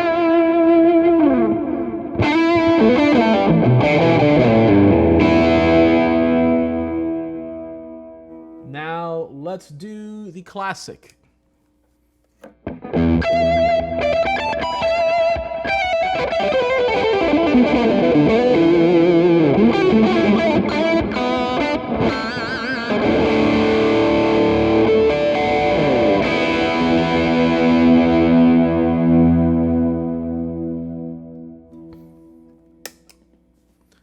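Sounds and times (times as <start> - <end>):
distorted electric guitar: 12.6 - 31.1.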